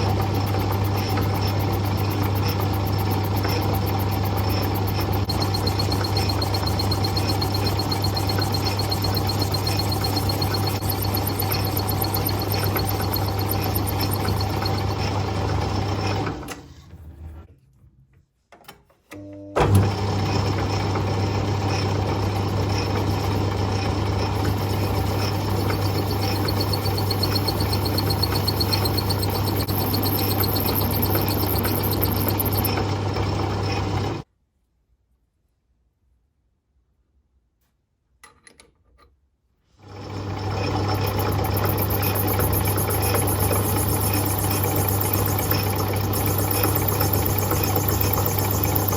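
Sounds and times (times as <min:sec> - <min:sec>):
lathe motor humming: 0:00.0 - 0:16.4, 0:20.4 - 0:34.2, 0:40.0 - 0:48.9.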